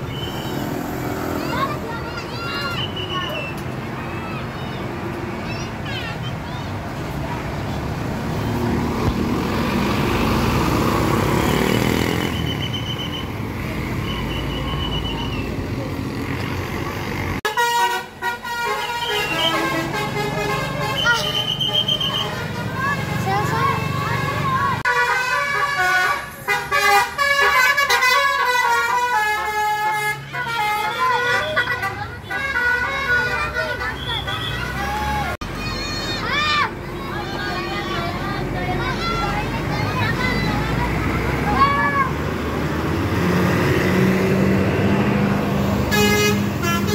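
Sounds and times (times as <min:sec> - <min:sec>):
road and traffic noise: 0:00.0 - 0:46.9
multi-tone musical air horn: 0:17.5 - 0:22.6, 0:24.9 - 0:34.5, 0:45.9 - 0:46.9.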